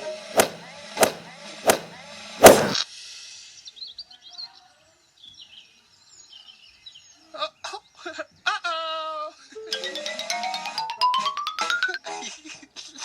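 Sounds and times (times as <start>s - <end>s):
sharp hits: 0.4s - 2.8s.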